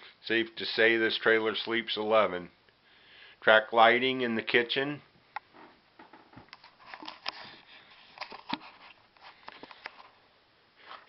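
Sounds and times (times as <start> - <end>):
soft hiss: 0.0 - 6.0.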